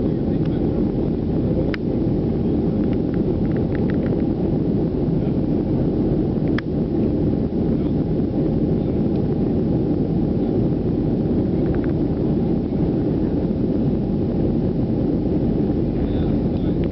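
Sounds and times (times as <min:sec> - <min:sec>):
jet engines roaring: 0:00.0 - 0:16.9
rushing air: 0:00.0 - 0:16.9.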